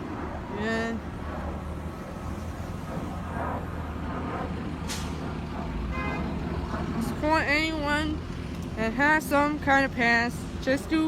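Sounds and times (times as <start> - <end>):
diesel vehicle engine rumbling: 0.0 - 11.0.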